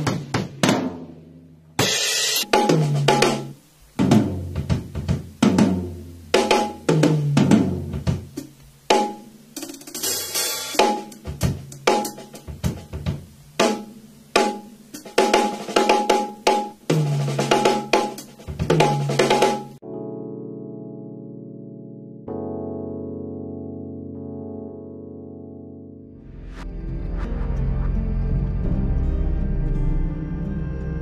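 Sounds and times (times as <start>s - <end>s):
cymbal crash: 1.8s - 2.6s.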